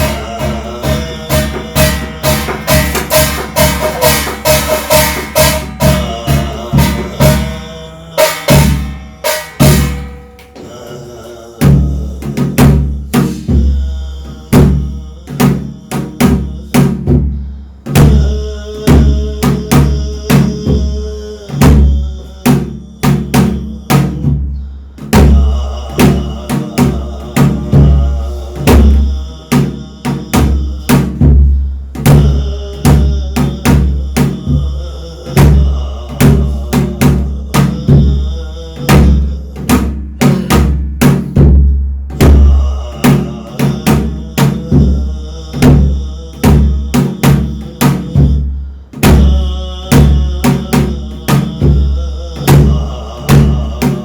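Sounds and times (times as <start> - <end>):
metallic cymbal ringing: 0.0 - 10.6
deep drum strokes: 0.0 - 54.0.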